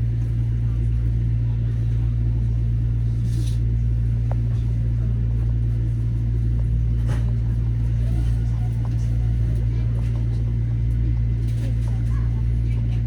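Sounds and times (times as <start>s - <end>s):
low hum inside railcar: 0.0s - 13.0s.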